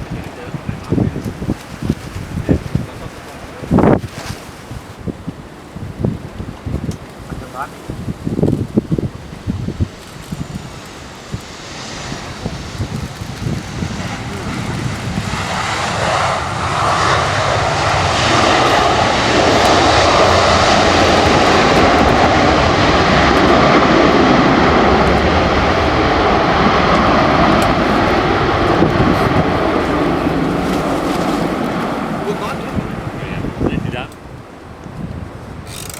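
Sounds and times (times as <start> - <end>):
jet engines rushing: 6.9 - 34.6.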